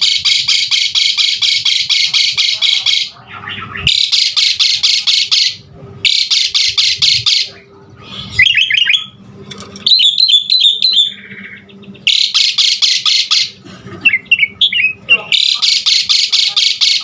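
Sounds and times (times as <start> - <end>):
starling singing: 0.0 - 7.6, 8.2 - 9.2, 9.8 - 17.0
harsh rattling bird notes: 0.0 - 17.0.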